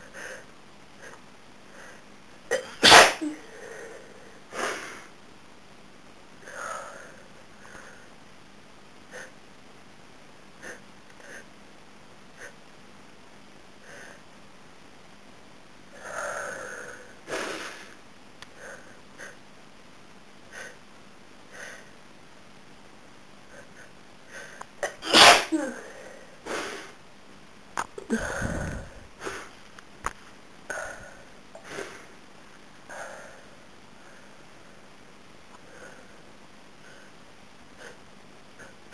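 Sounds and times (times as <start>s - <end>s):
woman sneezing: 2.5s - 3.5s, 24.8s - 25.8s
woman sniffling: 23.5s - 27.0s.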